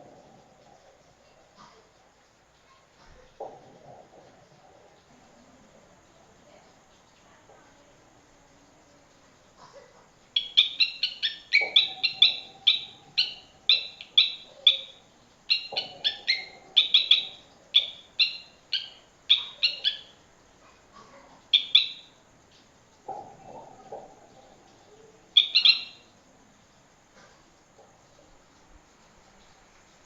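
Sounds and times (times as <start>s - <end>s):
sharp high chirps: 10.4s - 20.1s.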